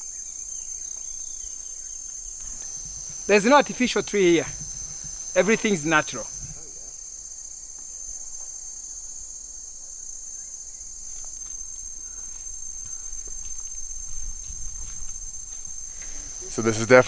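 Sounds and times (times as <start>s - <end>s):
shrill insect chorus: 0.0s - 17.0s.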